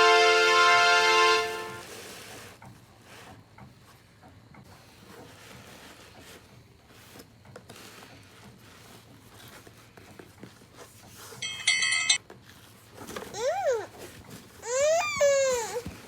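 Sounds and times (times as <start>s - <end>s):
brass music sting: 0.0s - 1.8s.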